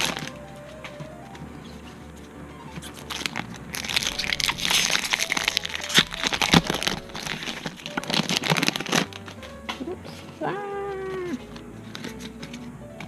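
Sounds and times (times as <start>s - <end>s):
foil wrapper crinkling and tearing: 0.0s - 0.4s, 2.8s - 10.2s.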